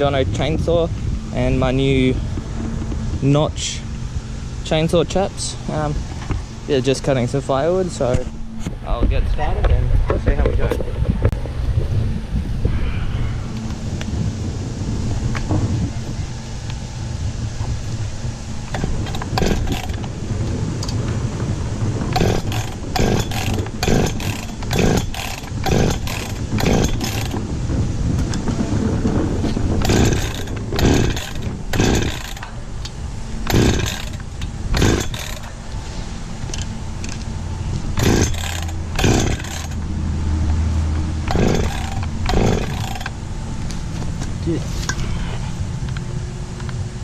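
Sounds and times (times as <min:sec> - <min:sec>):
chainsaw idling and revving: 0:18.6 - 0:20.3, 0:22.0 - 0:27.5, 0:29.7 - 0:32.6, 0:33.4 - 0:35.6, 0:37.9 - 0:43.4.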